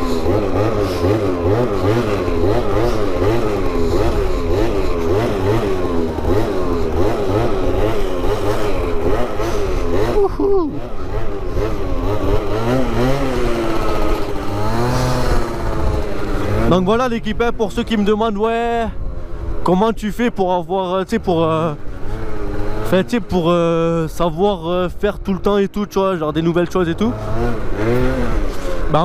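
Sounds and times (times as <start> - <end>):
scooter engine revving: 0.0 - 17.6, 21.2 - 23.9, 26.9 - 29.0.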